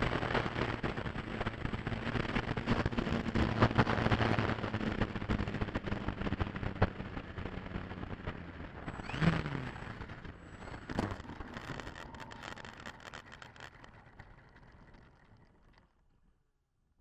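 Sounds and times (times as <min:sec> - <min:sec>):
crackles: 0:00.0 - 0:16.4.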